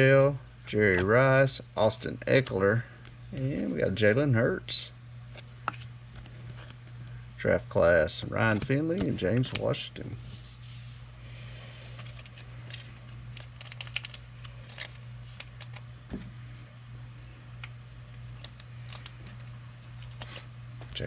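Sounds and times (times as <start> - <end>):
low electrical hum: 0.0 - 21.0
clicks and rustles of handling: 8.4 - 10.2.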